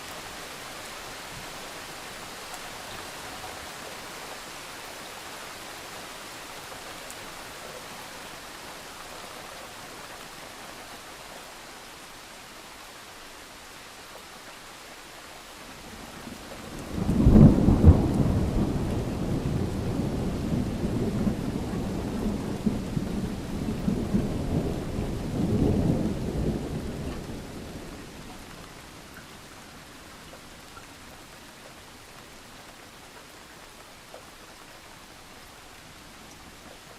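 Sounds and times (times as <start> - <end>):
steady rain hissing: 0.0 - 36.9
thunder clap and rumble: 16.3 - 28.4.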